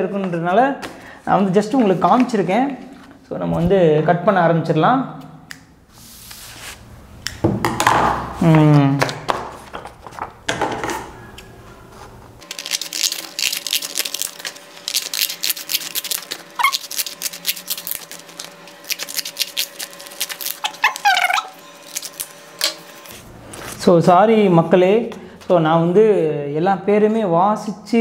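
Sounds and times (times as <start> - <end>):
scissors snipping paper: 12.4 - 23.2.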